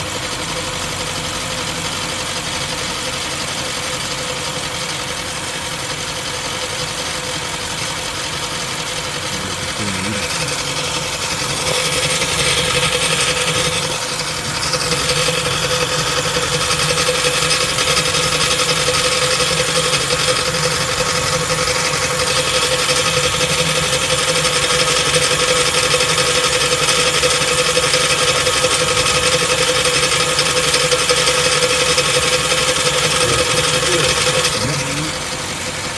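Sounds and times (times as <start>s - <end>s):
car engine running: 0.0s - 35.9s
steady whine: 0.0s - 35.9s
transmission knocking: 8.7s - 35.2s.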